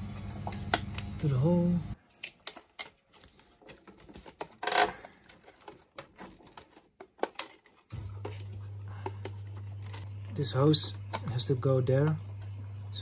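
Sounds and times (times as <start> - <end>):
steady low hum: 7.9 - 13.0.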